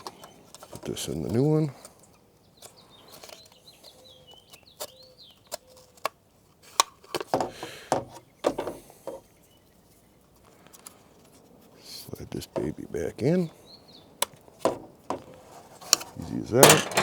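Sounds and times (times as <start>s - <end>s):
small metal parts clicking: 16.6s - 17.0s.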